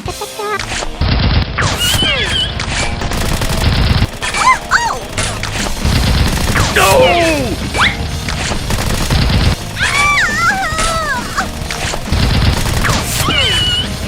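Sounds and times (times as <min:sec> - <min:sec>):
background music: 0:00.0 - 0:14.0
rapid gunfire sound effects: 0:00.9 - 0:14.0
booming impacts: 0:05.1 - 0:10.0.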